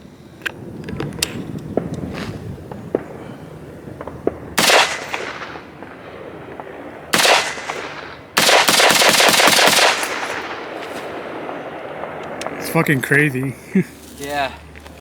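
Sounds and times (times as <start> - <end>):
rifle shots: 1.3 - 13.0.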